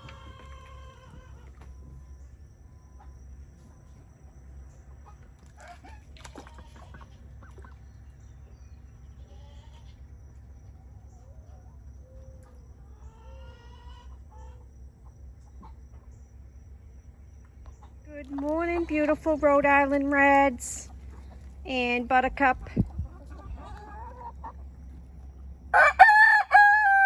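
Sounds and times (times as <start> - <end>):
chickens clucking: 0.0 - 2.1, 4.8 - 8.5, 9.2 - 16.2, 17.6 - 27.0
gliding chicken calls: 11.1 - 14.7, 23.0 - 25.1, 25.7 - 27.0.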